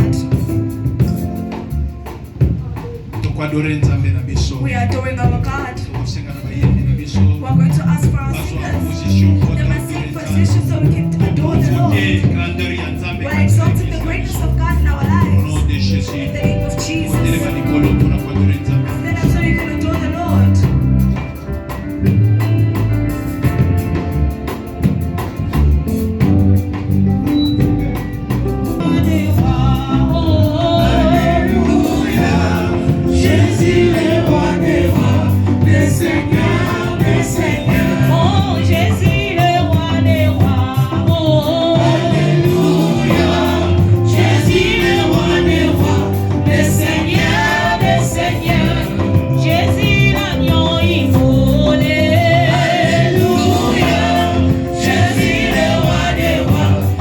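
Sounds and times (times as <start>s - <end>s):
bass guitar: 0.0s - 57.0s
drums: 0.0s - 57.0s
singers singing together: 8.4s - 14.1s, 28.7s - 57.0s.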